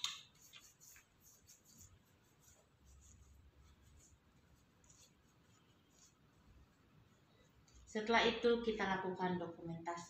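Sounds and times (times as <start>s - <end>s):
hands rubbing sanitizer: 0.0s - 7.9s.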